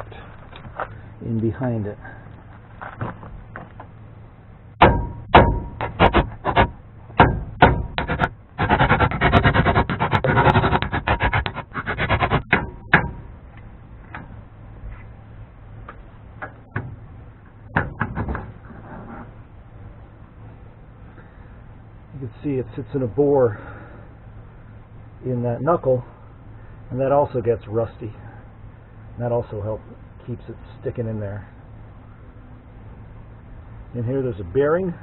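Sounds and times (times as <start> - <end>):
hammer striking metal: 4.8 - 8.3, 12.5 - 13.3.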